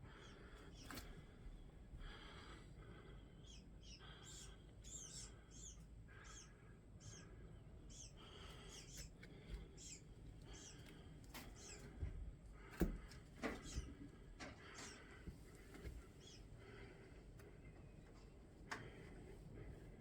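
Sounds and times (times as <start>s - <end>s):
birds chirping high: 0.0s - 20.0s.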